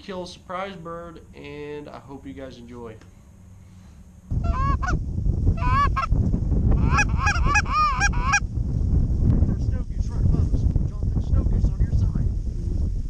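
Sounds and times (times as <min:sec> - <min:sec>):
wind rumble on microphone: 0:04.3 - 0:13.0
geese calling: 0:04.4 - 0:05.0, 0:05.6 - 0:06.1, 0:06.8 - 0:08.4.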